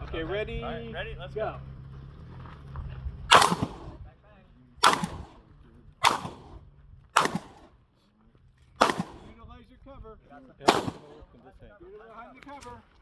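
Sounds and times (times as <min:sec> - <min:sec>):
handgun shots with echo: 0:03.3 - 0:04.0, 0:04.8 - 0:06.6, 0:07.2 - 0:07.7, 0:08.8 - 0:09.4, 0:10.7 - 0:11.3.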